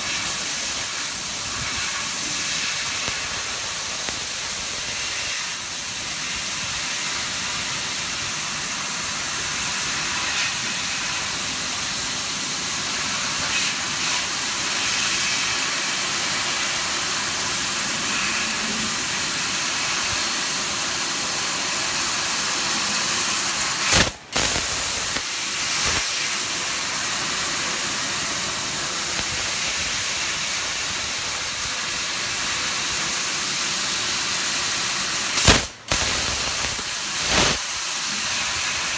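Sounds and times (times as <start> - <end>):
laser cutter gas jet hissing: 0.0 - 38.9.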